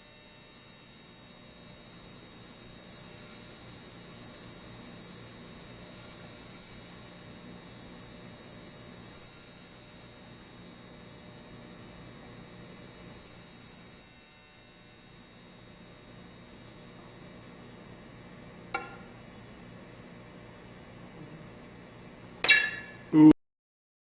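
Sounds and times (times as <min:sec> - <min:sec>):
high whistling tones: 0:00.0 - 0:17.0, 0:22.4 - 0:23.0.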